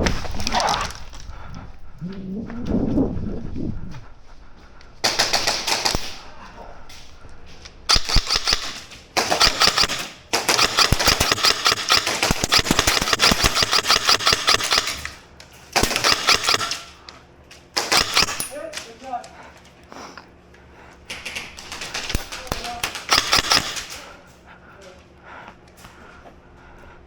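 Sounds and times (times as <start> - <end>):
airsoft guns firing on full auto: 5.0 - 6.3, 7.9 - 17.0, 17.8 - 18.8, 21.1 - 24.1.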